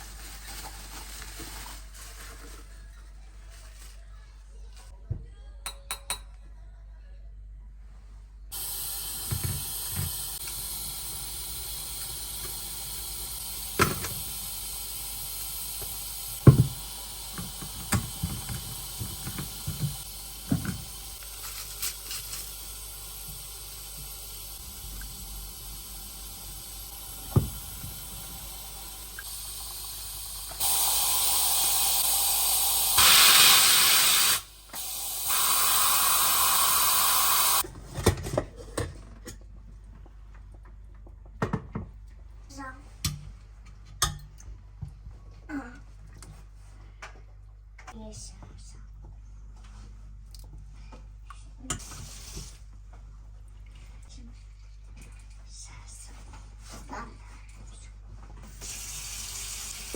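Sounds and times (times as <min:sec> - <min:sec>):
steady hiss: 0:08.5 - 0:37.6.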